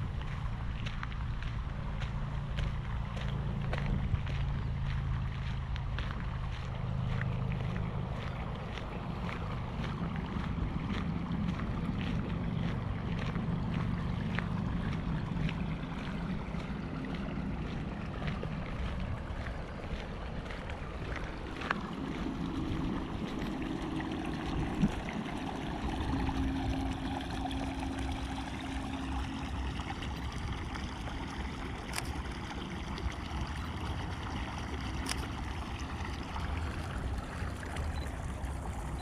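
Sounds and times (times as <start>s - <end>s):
faint engine hum: 0.0s - 39.0s
low steady rumble: 0.0s - 39.0s
footsteps walking: 0.2s - 29.8s
wind on microphone: 7.6s - 34.6s.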